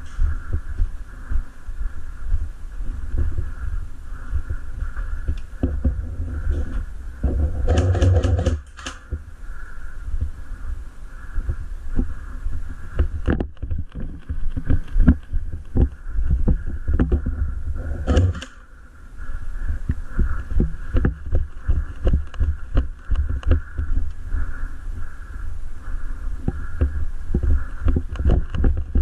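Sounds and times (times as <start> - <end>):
microphone handling rumble: 0.0 - 9.3, 11.4 - 18.6, 19.7 - 24.4, 26.4 - 29.0
irregular thumps: 4.4 - 9.3, 12.9 - 18.6, 19.9 - 24.1
scattered clicks and knocks: 5.3 - 9.2, 17.0 - 18.6.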